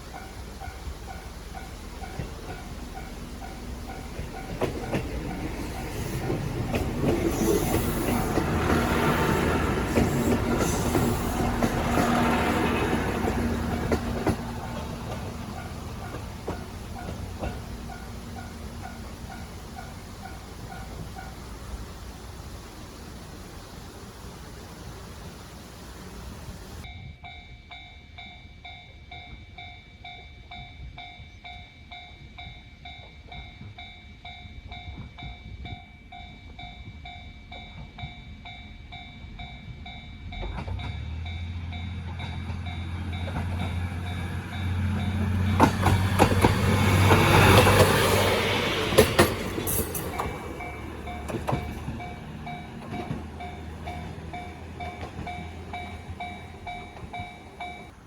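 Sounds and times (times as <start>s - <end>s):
train wheels clicking over rail joints: 0.0s - 21.7s, 29.1s - 58.0s
diesel railcar engine drone: 0.0s - 26.9s, 35.5s - 58.0s.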